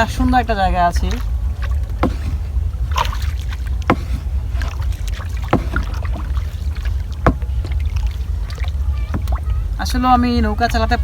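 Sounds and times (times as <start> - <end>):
steady low rumble: 0.0 - 11.0
oar knocking against wooden boat: 1.0 - 9.5.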